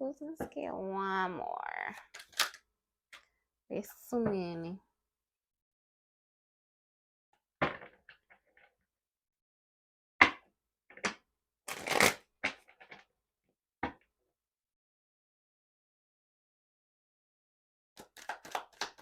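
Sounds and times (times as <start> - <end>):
cards snapping and tapping: 18.0 - 19.0.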